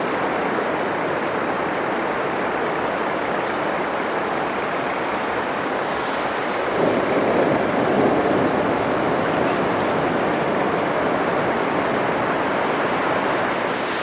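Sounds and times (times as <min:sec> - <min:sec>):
surf breaking on beach: 0:05.2 - 0:14.0.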